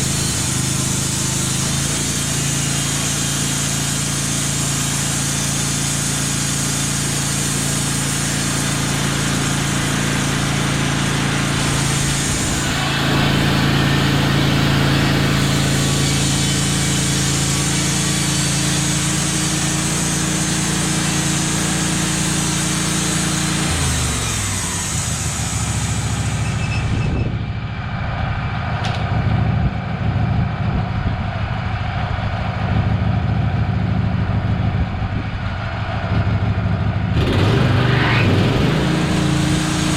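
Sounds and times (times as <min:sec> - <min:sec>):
engine running: 0:00.0 - 0:39.9.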